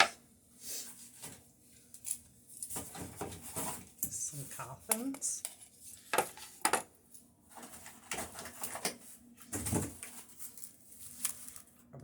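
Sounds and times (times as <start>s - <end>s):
packaging rustling: 9.6s - 11.8s.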